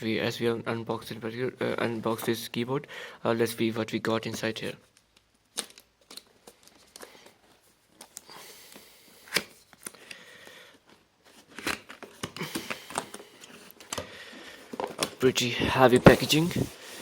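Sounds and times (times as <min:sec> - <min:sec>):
cardboard box rustling: 0:14.6 - 0:17.0.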